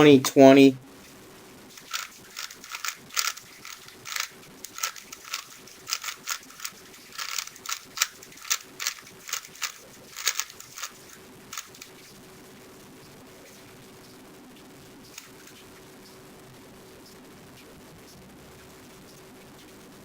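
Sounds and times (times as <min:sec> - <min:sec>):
puzzle cube plastic clicks: 0:01.8 - 0:11.9.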